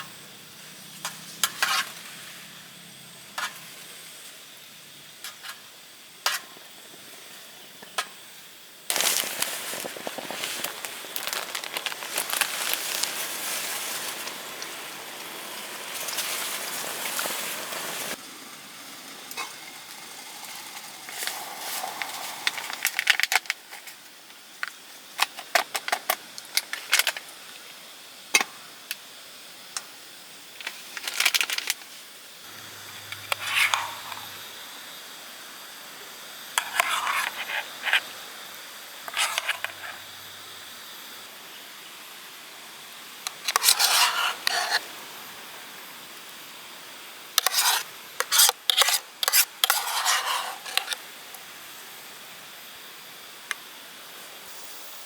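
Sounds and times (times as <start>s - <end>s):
utensil stirring in pan: 8.9s - 18.2s, 33.0s - 34.4s, 36.6s - 38.1s, 39.0s - 40.2s, 43.3s - 44.9s, 47.4s - 51.0s
food sizzling in a pan: 8.9s - 24.2s, 47.1s - 51.1s.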